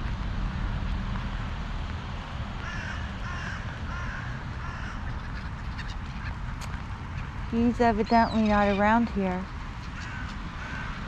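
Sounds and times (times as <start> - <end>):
steady low rumble: 0.0 - 11.0
crow cawing: 2.6 - 6.3, 9.8 - 11.0.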